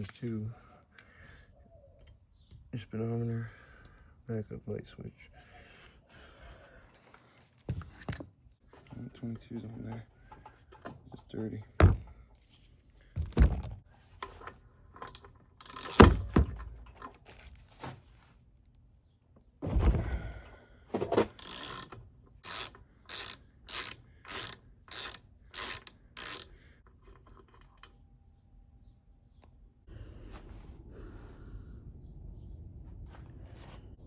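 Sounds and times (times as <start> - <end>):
ratchet wrench clicking: 15.1 - 16.1, 21.4 - 26.5
wrench clanking: 21.3 - 26.5.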